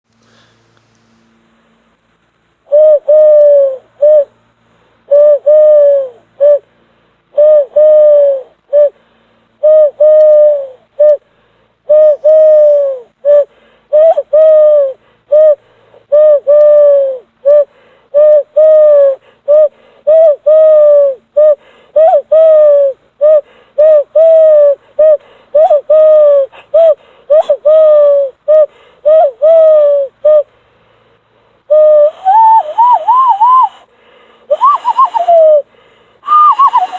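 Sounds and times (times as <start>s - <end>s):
hand whistle hooting: 2.7s - 4.3s, 5.1s - 6.6s, 7.4s - 8.9s, 9.6s - 11.2s, 11.9s - 30.5s, 31.7s - 33.8s, 34.5s - 36.9s.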